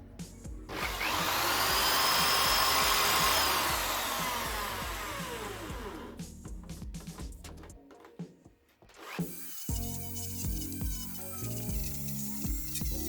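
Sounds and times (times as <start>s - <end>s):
lathe motor whine: 0.7s - 6.2s.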